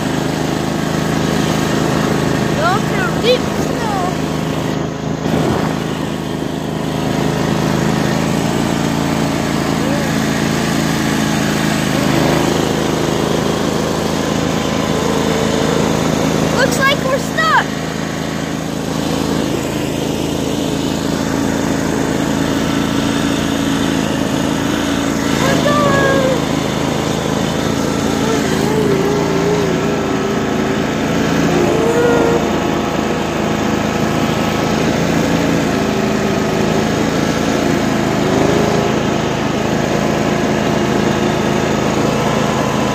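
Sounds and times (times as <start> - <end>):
lawn mower engine running: 0.0 - 42.9
wavering higher tone: 27.8 - 32.9.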